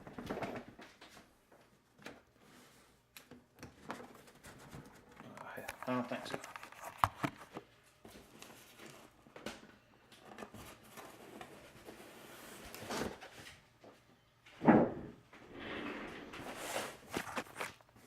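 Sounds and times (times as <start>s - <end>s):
loud scrape: 15.5s - 17.1s.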